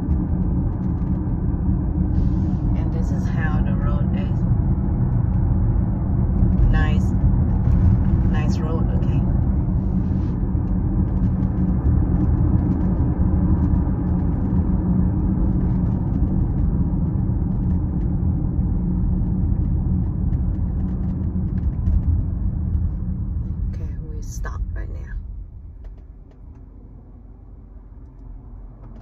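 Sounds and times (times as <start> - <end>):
road and tyre rumble: 0.0 - 29.0
faint ticks and creaks: 19.1 - 23.6.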